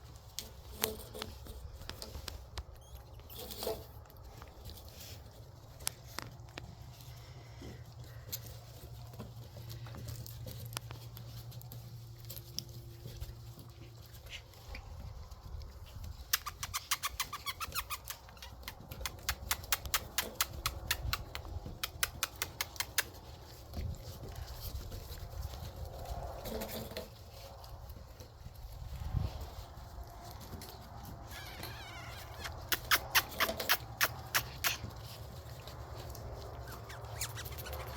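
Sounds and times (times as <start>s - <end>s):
puppy claws clicking: 15.4s - 27.1s, 30.0s - 37.9s.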